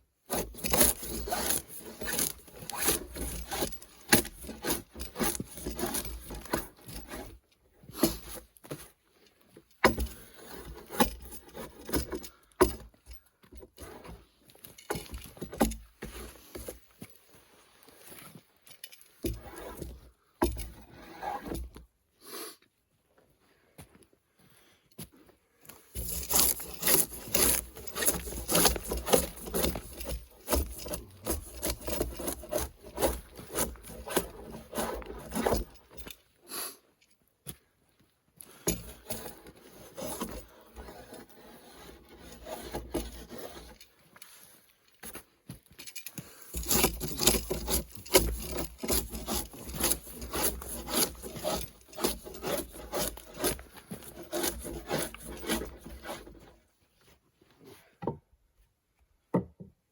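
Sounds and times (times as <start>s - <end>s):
hand tool rasping wood: 0.2s - 8.8s, 9.8s - 13.0s, 14.9s - 16.8s, 19.2s - 21.6s, 25.9s - 36.7s, 38.6s - 43.8s, 46.4s - 56.6s.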